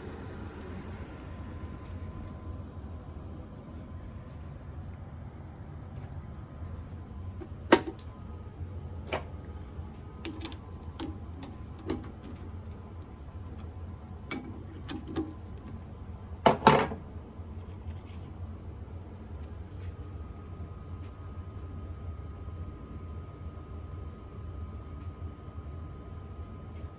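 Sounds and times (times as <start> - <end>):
steady low hum: 0.0 - 26.9
sharp clicks and knocks: 7.4 - 8.1, 10.2 - 12.5, 13.5 - 15.8.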